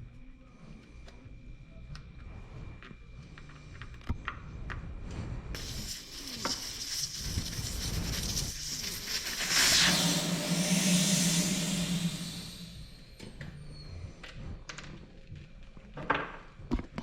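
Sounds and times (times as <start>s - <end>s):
air hissing from tire valve: 5.6s - 13.2s.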